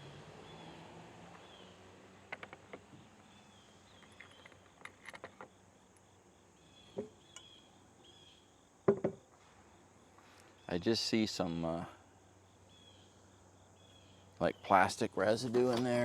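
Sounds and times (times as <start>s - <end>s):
small bolts clicking and clinking: 2.2s - 6.1s
faint high chirping: 3.2s - 8.8s.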